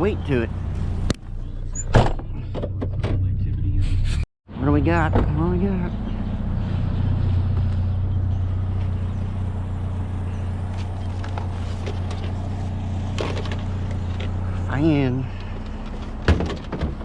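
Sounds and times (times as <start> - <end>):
pickup engine idling: 4.9 - 17.0
faint engine knocks: 10.1 - 17.0.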